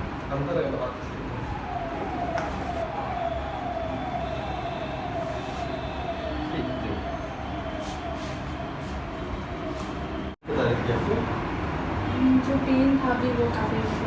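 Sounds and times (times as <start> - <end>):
emergency vehicle siren: 0.2 - 11.2.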